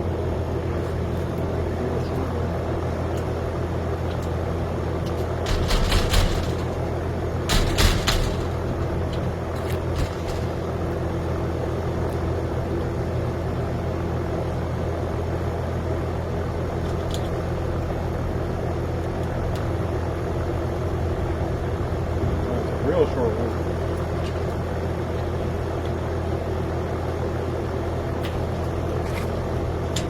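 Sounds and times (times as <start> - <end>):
low mechanical drone: 0.0 - 30.0
metallic clicks and knocks: 5.1 - 10.7.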